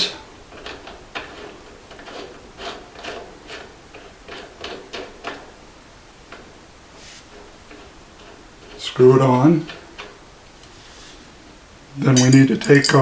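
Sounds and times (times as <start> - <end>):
tool scraping clicks in threads: 0.0 - 5.6, 6.2 - 10.8.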